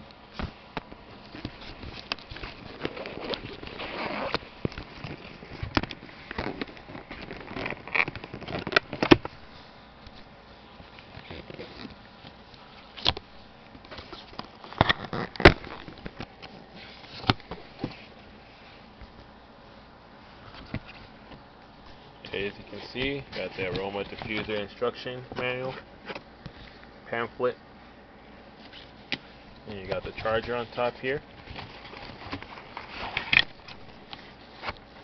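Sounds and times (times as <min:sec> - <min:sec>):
cardboard box rustling and scraping: 0:00.4 - 0:13.0, 0:21.9 - 0:26.8, 0:28.6 - 0:35.0.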